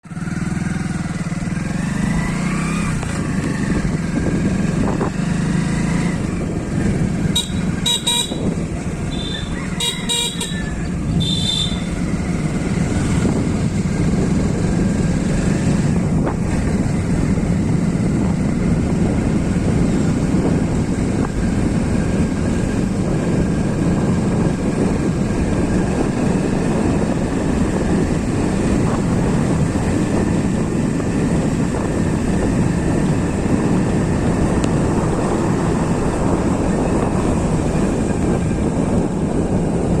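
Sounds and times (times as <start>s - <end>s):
vehicle low rumble: 0.0s - 40.0s
short horn toot: 7.3s - 12.0s.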